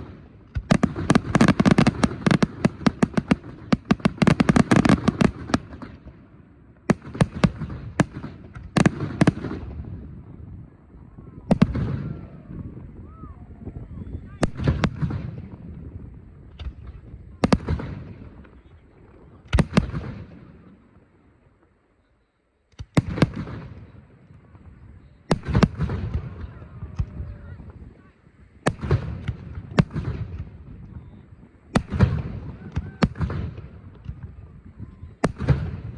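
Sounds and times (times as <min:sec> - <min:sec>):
fireworks bangs: 0:00.0 - 0:21.7, 0:22.7 - 0:35.9.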